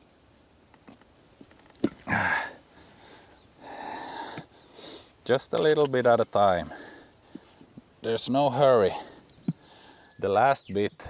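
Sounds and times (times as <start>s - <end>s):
man straining and exhaling: 1.8s - 2.6s.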